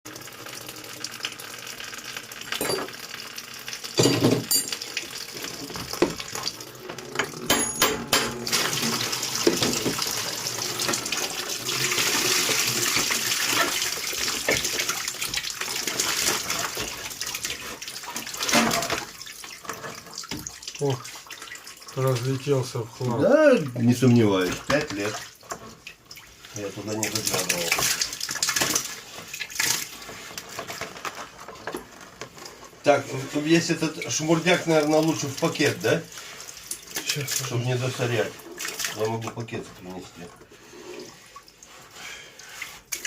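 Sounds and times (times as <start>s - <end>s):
water running and splashing: 0.1s - 43.0s
metallic knocks and clatters: 4.0s - 4.9s, 7.2s - 8.4s.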